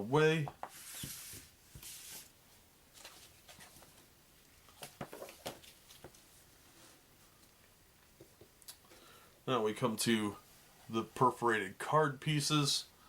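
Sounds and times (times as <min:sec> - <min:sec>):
cardboard sliding on table: 0:00.6 - 0:02.3.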